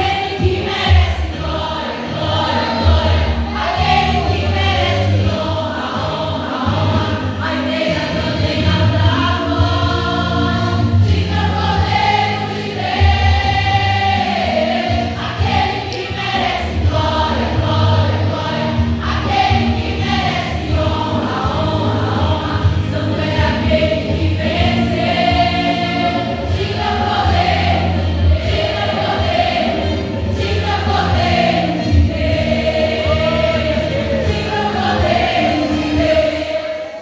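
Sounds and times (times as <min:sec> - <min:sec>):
choir singing a gospel hymn: 0:00.0 - 0:37.0.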